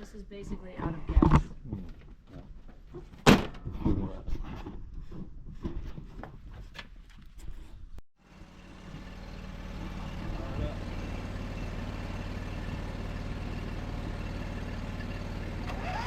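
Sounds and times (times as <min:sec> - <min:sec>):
sharp thunk: 0:03.2 - 0:03.6
lawn tractor engine running: 0:08.2 - 0:16.0.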